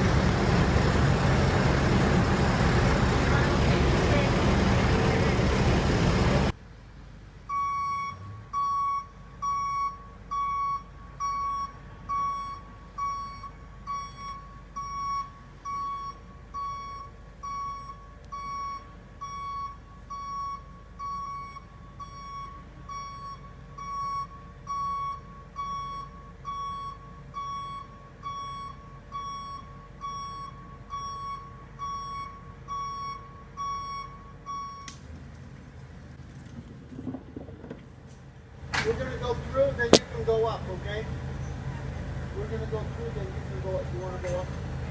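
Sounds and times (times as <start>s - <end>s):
reversing alarm beeping: 7.5s - 34.9s.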